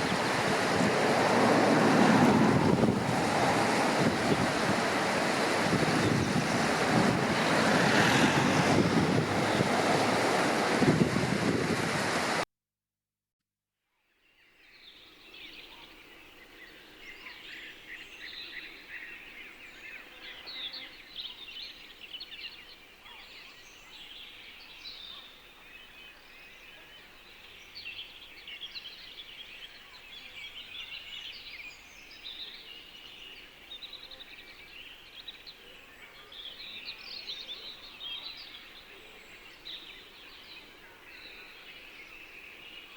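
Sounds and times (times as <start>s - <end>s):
ocean surf: 0.0s - 12.4s
wind noise: 0.0s - 12.4s.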